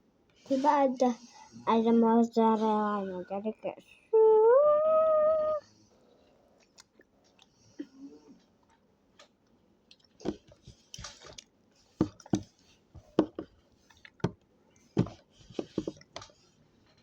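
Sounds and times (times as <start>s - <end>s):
person chewing food: 6.6s - 16.2s
mouth clicks and smacks: 9.9s - 12.5s, 13.8s - 14.4s.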